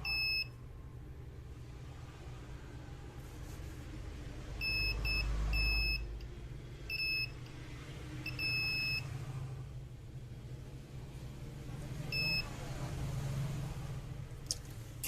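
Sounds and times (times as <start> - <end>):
multimeter continuity buzzer beeping: 0.0 - 0.6, 4.6 - 6.2, 6.9 - 7.4, 8.2 - 9.1, 12.1 - 12.5.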